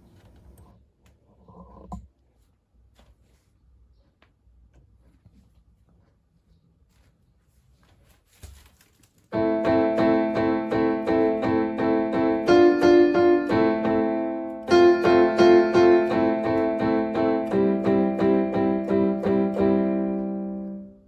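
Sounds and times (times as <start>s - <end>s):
electronic keyboard playing a tune: 9.4s - 21.0s.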